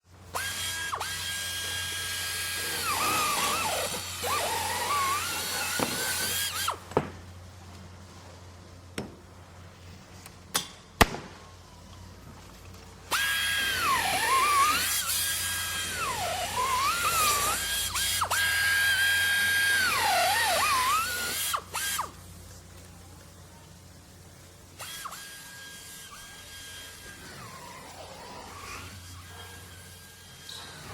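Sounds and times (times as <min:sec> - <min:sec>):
power drill whining: 0:00.3 - 0:06.8, 0:13.1 - 0:22.2, 0:24.8 - 0:30.9.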